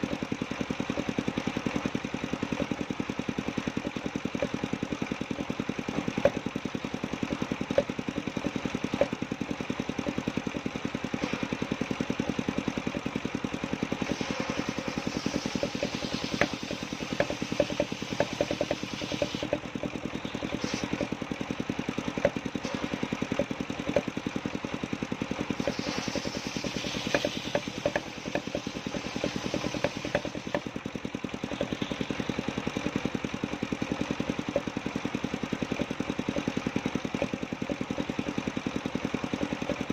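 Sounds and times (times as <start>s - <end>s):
circular saw engine chugging: 0.0s - 39.9s
saw blade hissing through wood: 13.9s - 19.5s, 20.5s - 21.0s, 25.5s - 30.5s.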